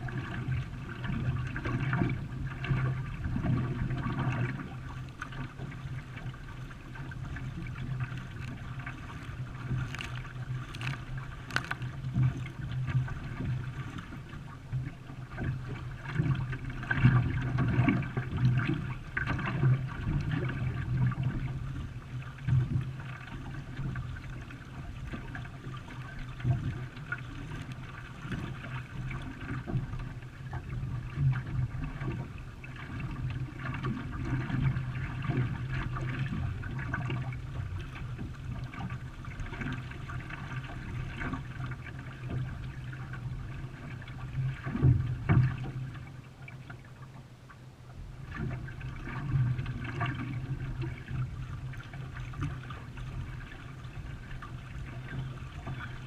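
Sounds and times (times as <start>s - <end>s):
water sloshing and splashing: 0.0s - 56.0s.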